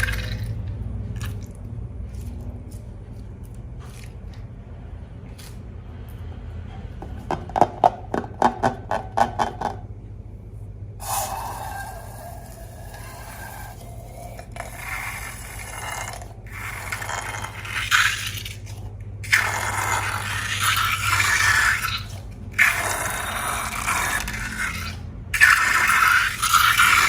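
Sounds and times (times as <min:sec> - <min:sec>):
slime scraping and crackling: 0:12.3 - 0:27.0.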